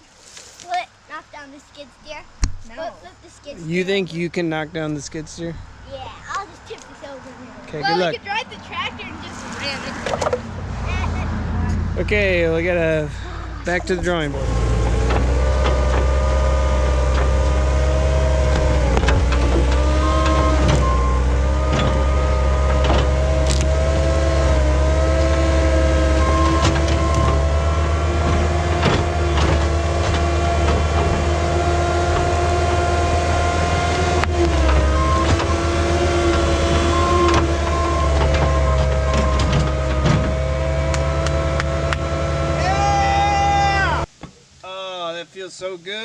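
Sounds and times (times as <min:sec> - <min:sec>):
skid steer engine running: 0:09.6 - 0:44.0
knocks and clicks: 0:14.0 - 0:23.8, 0:28.2 - 0:31.3, 0:33.9 - 0:42.1.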